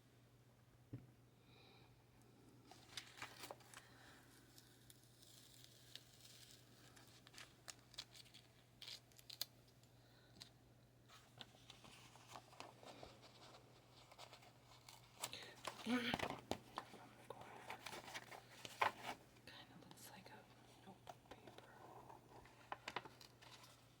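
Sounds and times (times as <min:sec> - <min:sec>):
paper rustling and crinkling: 0:02.7 - 0:09.5, 0:11.1 - 0:19.4, 0:20.7 - 0:24.0.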